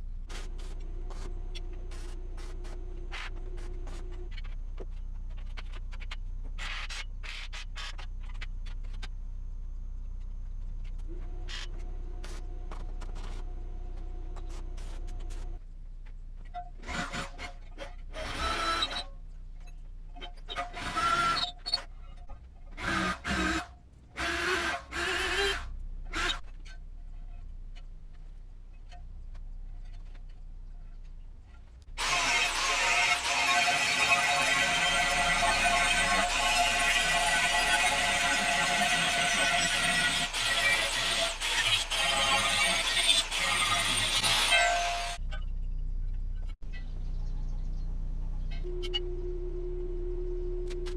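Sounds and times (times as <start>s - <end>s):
steady low hum: 0.0s - 18.3s, 45.1s - 50.9s
sharp clicks and scrapes: 0.2s - 9.2s, 10.1s - 13.6s, 14.4s - 45.2s
loud noisy bursts: 32.0s - 45.2s.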